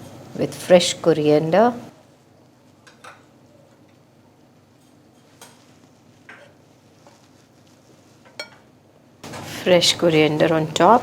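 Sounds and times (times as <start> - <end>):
spoon clinking on plate and pot: 8.3 - 8.7.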